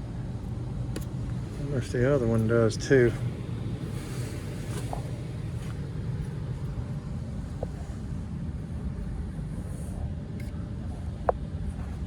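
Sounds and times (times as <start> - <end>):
furnace blower rumbling: 0.0 - 12.0.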